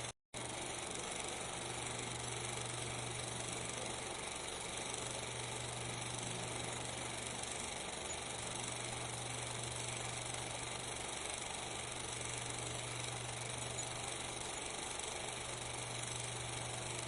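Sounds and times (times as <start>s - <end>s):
steady hiss: 0.0s - 17.0s.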